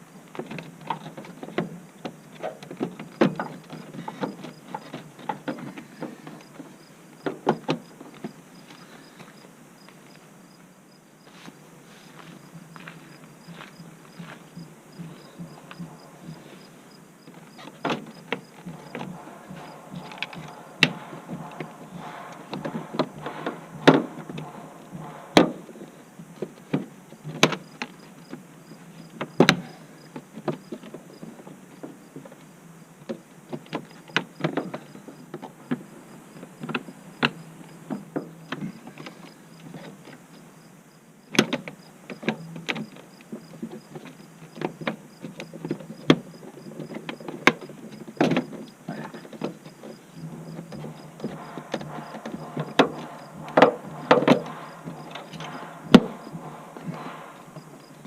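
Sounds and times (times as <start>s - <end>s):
faint low hum: 3.4s - 33.1s, 47.8s - 58.0s.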